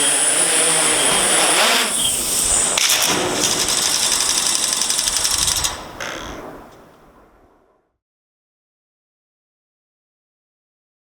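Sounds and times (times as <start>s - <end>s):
motors winding down: 0.0s - 6.2s
drone rotors clattering: 0.0s - 7.0s.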